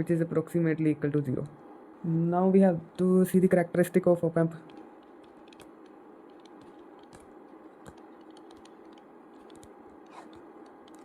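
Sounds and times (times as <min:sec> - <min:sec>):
steady low hiss: 0:00.0 - 0:11.0
light clicks and taps: 0:04.6 - 0:11.0.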